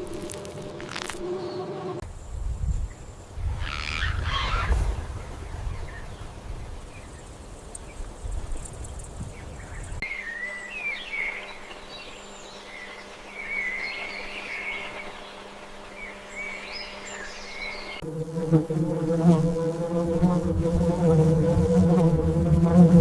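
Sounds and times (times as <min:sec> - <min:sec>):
small birds chirping: 0:02.6 - 0:18.0.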